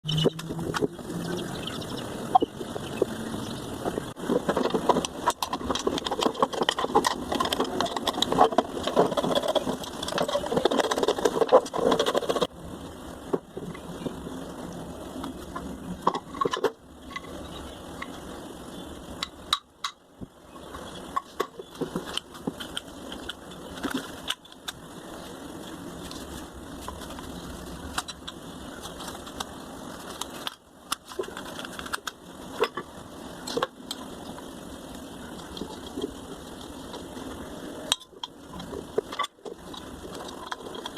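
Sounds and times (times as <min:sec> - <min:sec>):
rattle and clicks: 0:00.1 - 0:12.5, 0:25.6 - 0:40.9.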